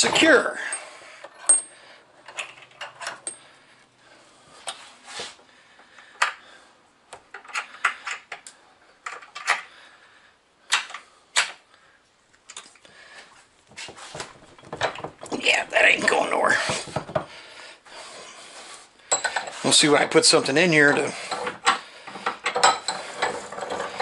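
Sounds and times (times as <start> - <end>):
metal tools clicking and clinking: 0.0 - 3.5, 19.1 - 19.8, 20.8 - 24.0.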